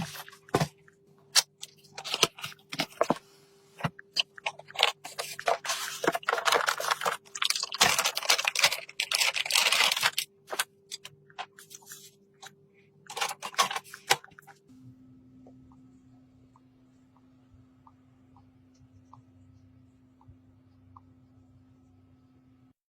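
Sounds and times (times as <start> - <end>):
packaging rustling and crackling: 0.0 - 0.7, 1.3 - 12.5, 13.1 - 14.5
faint steady hum: 0.0 - 22.8.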